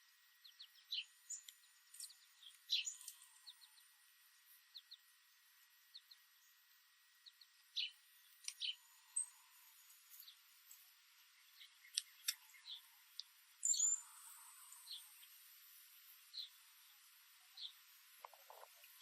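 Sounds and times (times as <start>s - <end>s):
songbirds chirping: 0.0s - 19.0s.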